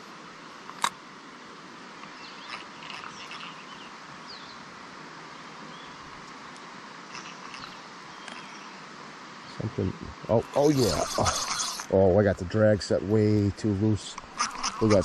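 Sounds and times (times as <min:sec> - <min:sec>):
steady background hiss: 0:00.0 - 0:15.0
faint bird chirps: 0:02.0 - 0:04.7, 0:05.3 - 0:11.9, 0:14.2 - 0:15.0.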